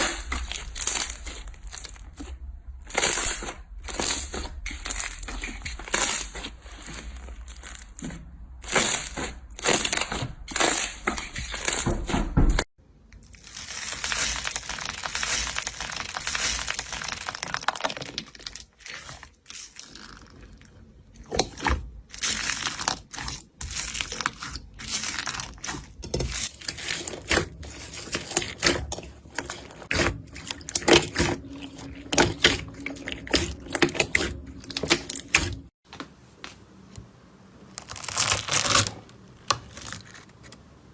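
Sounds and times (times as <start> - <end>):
slime crackling and popping: 13.2 - 20.5, 37.8 - 39.0.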